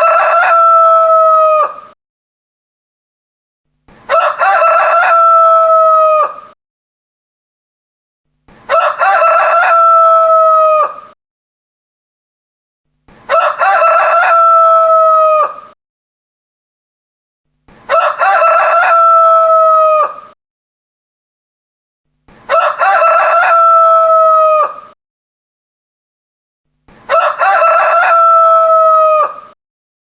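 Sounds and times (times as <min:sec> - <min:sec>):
rooster crowing: 0:00.0 - 0:01.9, 0:04.1 - 0:06.6, 0:08.7 - 0:11.2, 0:13.3 - 0:15.8, 0:17.9 - 0:20.3, 0:22.5 - 0:24.9, 0:27.1 - 0:29.6.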